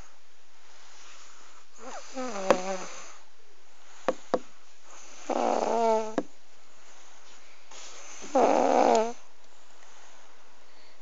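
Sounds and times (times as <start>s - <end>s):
baby snoring: 1.8s - 3.2s, 4.9s - 6.3s, 8.0s - 9.3s.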